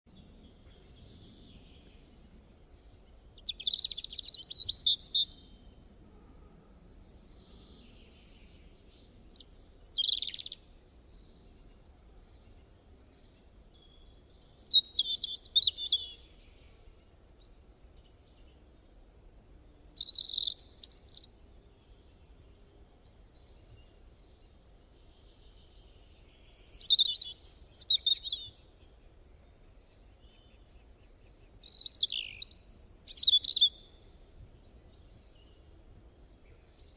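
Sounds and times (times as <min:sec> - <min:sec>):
songbird twittering: 0:00.2 - 0:05.7, 0:07.0 - 0:18.6, 0:19.6 - 0:35.6.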